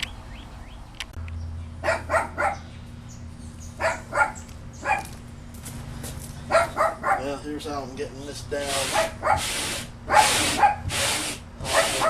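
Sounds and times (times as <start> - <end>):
dog barking: 1.8 - 2.6, 3.8 - 5.1, 6.5 - 7.4, 8.9 - 9.5, 10.1 - 10.9, 11.6 - 12.0.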